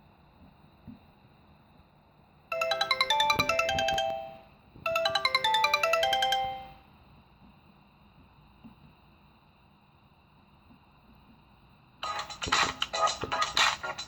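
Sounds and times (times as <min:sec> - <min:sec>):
phone ringtone melody: 0:02.5 - 0:06.9.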